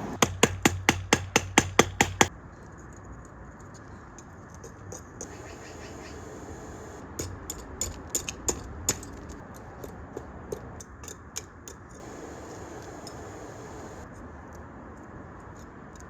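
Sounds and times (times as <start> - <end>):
hair dryer blowing air: 5.4 - 7.0, 12.0 - 14.0
burning wood crackling: 12.0 - 14.0.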